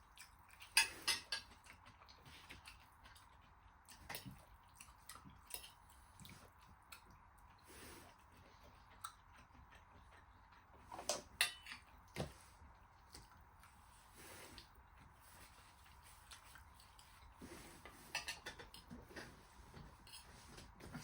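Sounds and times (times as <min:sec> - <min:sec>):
cutlery scraping a plate: 0:00.8 - 0:01.5, 0:11.0 - 0:11.9, 0:17.4 - 0:21.0.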